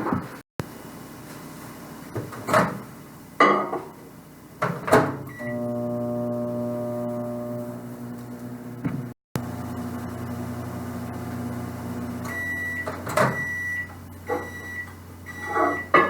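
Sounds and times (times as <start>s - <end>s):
knocks and clatters loading oven: 2.1s - 3.9s, 4.6s - 5.3s, 12.2s - 13.6s
microwave oven humming: 5.3s - 16.0s.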